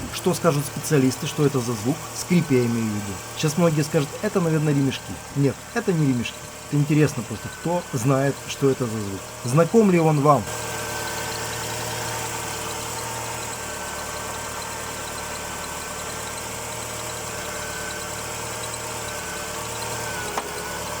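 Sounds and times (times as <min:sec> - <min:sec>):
car engine idling: 0:00.0 - 0:21.0
thin steady squeak: 0:06.1 - 0:21.0.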